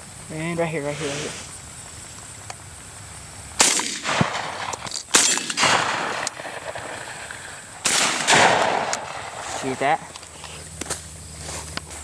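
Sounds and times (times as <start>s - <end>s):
shotgun shots: 3.6s - 10.0s.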